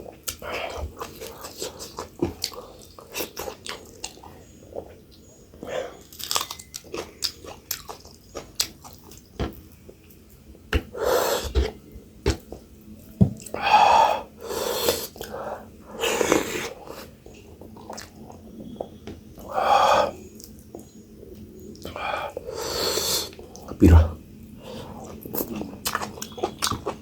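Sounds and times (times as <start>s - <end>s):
person chewing: 0.1s - 5.0s, 6.0s - 10.0s, 16.0s - 18.9s, 21.7s - 27.0s.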